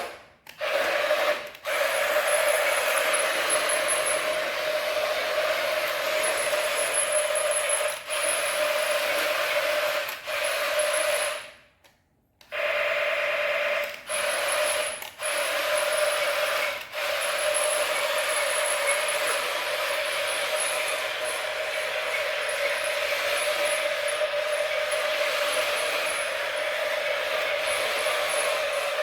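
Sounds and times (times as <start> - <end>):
small motor whirring through gears: 13.4 - 29.0.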